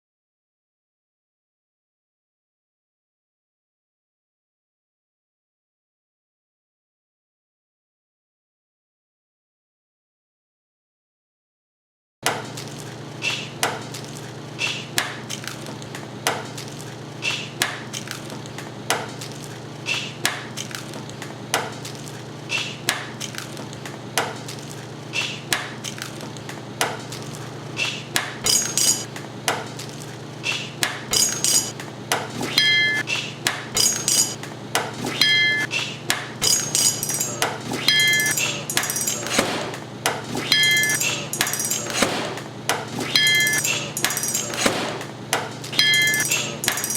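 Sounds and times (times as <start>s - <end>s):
steady low hum: 23.5s - 46.9s
metal ringing: 28.4s - 29.1s, 31.1s - 31.7s, 33.8s - 34.4s, 36.4s - 45.1s, 45.8s - 46.9s.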